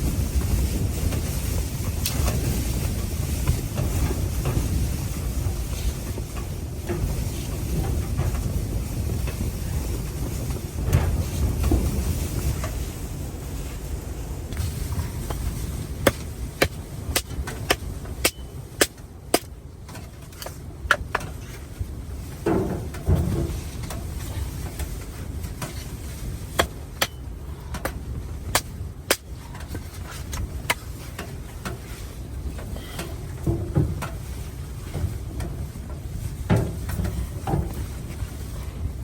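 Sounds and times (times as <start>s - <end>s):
steady low rumble: 0.0s - 39.0s
scraping rustle: 19.3s - 39.0s.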